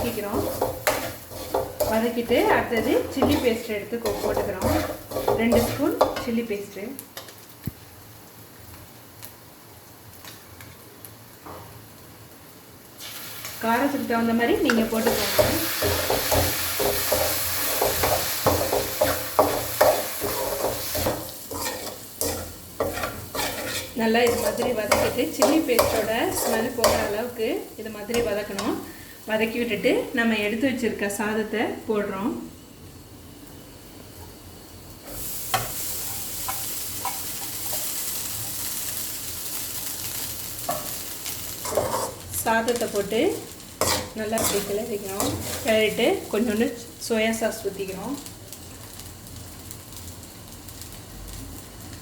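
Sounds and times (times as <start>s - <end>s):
spoon stirring and scraping pan: 0.0s - 6.4s, 14.5s - 27.3s, 28.0s - 28.9s, 35.1s - 38.6s, 40.6s - 46.4s
food sizzling in oil: 0.0s - 52.0s.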